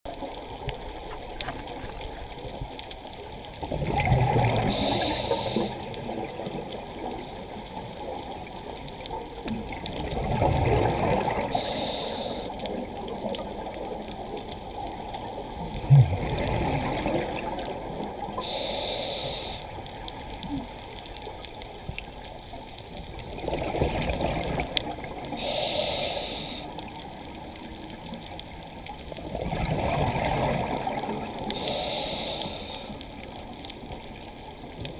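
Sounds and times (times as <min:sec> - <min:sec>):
steady watery hiss: 0:00.1 - 0:34.9
exhaled bubbles rushing: 0:03.6 - 0:07.1, 0:09.6 - 0:11.6, 0:15.5 - 0:18.4, 0:23.2 - 0:25.3, 0:29.2 - 0:31.5
diver inhaling through regulator: 0:04.7 - 0:05.8, 0:11.5 - 0:12.6, 0:18.4 - 0:19.7, 0:25.4 - 0:26.7, 0:31.5 - 0:33.0.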